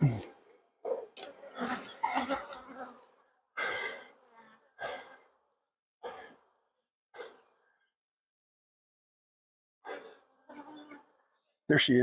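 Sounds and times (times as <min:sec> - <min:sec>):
person sighing: 0:00.0 - 0:00.3.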